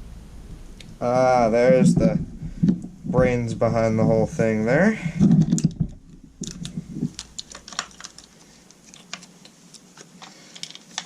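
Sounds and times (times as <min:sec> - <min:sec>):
plastic parts clicking and tapping: 0:05.2 - 0:11.0.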